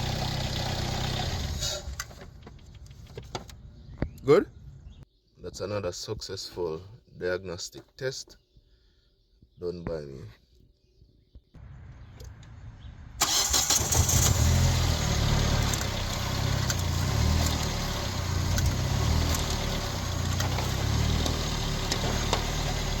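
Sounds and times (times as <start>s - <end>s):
car engine starting and idling: 0.0s - 2.8s, 11.6s - 23.0s.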